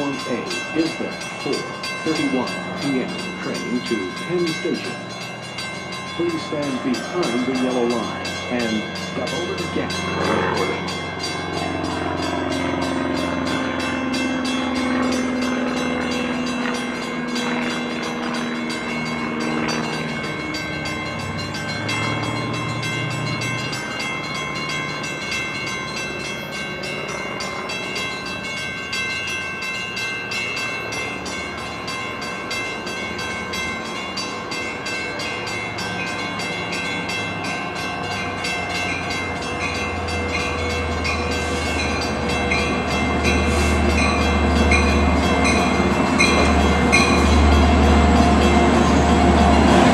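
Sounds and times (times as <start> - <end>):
train motor whine and wheel noise: 0.0 - 49.9.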